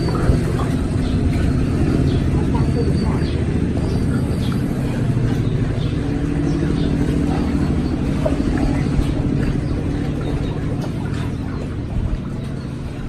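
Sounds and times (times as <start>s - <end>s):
small engine running: 0.0s - 13.0s.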